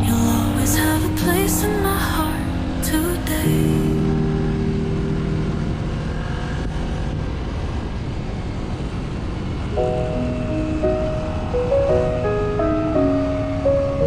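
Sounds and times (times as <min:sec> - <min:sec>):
background music: 0:00.0 - 0:07.0, 0:09.8 - 0:14.0
low vehicle noise: 0:00.0 - 0:14.0.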